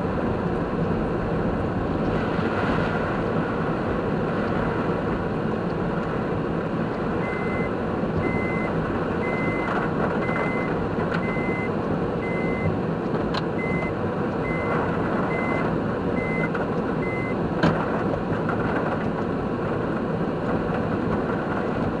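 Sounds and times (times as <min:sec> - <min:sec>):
reversing warning beeps: 0:07.2 - 0:12.8, 0:13.6 - 0:17.4.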